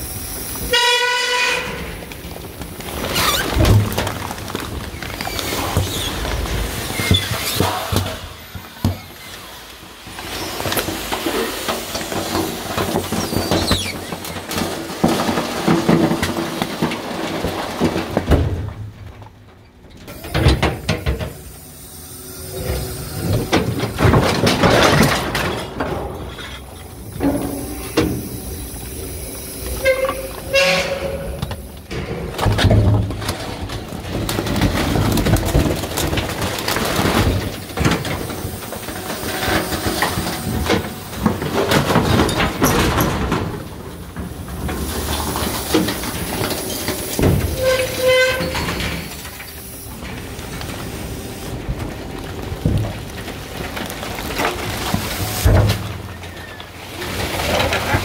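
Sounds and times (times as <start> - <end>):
garbage truck compactor crushing: 0.0 - 58.0
bags whistling and popping: 2.9 - 3.7, 4.6 - 8.0, 13.2 - 14.0.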